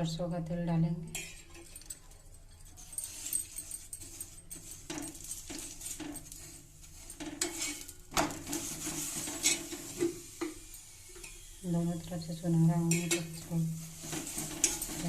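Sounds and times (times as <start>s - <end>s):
light sizzle: 0.0s - 15.0s
metal spatula scraping griddle: 2.6s - 10.5s, 12.7s - 15.0s.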